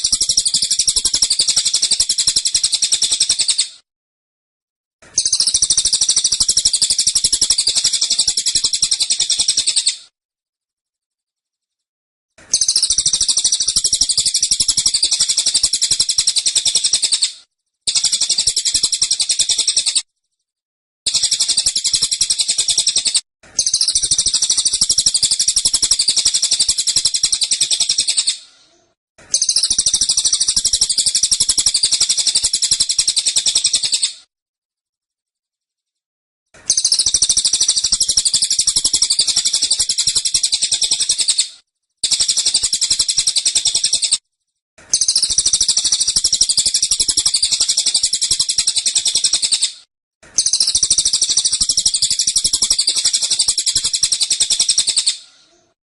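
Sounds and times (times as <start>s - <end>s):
songbird fast chattering song: 0.0s - 3.7s, 5.2s - 10.0s, 12.5s - 17.3s, 17.9s - 20.0s, 21.1s - 28.4s, 29.3s - 34.1s, 36.7s - 41.4s, 42.0s - 44.2s, 44.9s - 49.7s, 50.4s - 55.2s.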